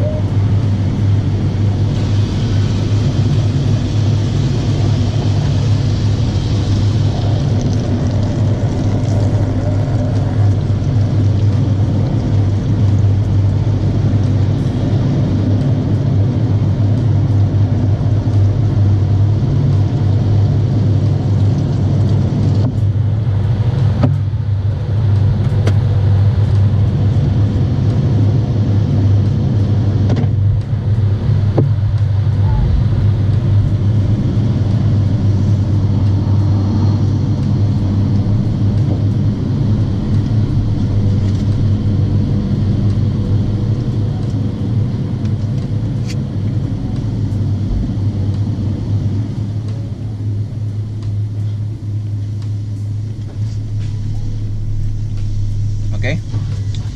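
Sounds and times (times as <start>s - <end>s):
car wash machinery rumble: 0.0s - 56.9s
water spray hissing: 1.3s - 11.2s.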